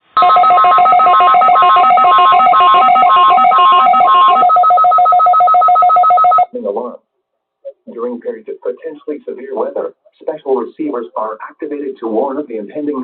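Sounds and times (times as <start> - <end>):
higher on-off alarm tone: 0.2 - 6.5
rapid electronic alarm beeps: 0.2 - 6.5.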